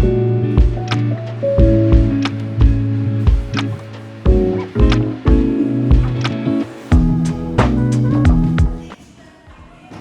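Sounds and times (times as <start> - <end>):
low drum strikes: 0.0 - 0.9, 1.6 - 8.9
sustained pitched notes: 1.6 - 8.9.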